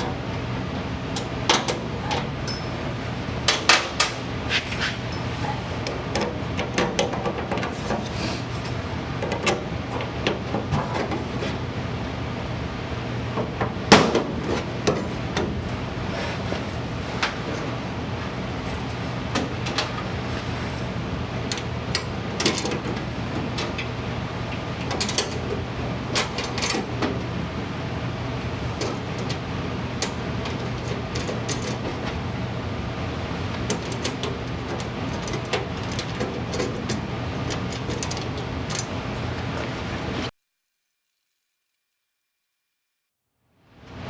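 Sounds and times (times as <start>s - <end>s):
clicks and light metal knocks: 33.5s - 39.8s.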